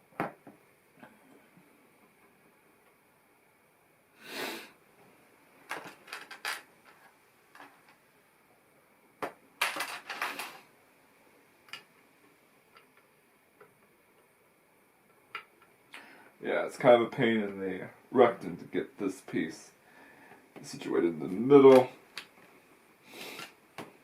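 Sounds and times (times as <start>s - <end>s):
plastic bricks clicking together: 5.7s - 6.7s
plastic pieces rustling: 5.7s - 7.8s, 9.6s - 10.6s.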